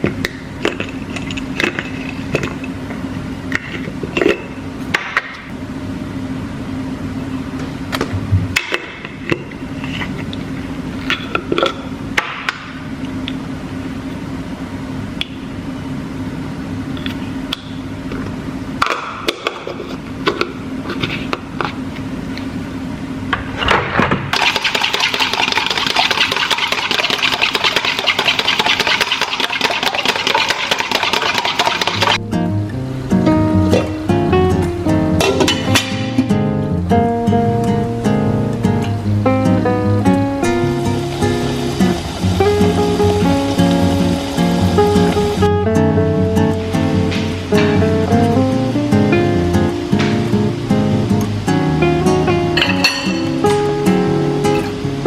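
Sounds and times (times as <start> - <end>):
utensils clicking and knocking: 24.4 - 32.2
low motor hum: 36.2 - 52.2.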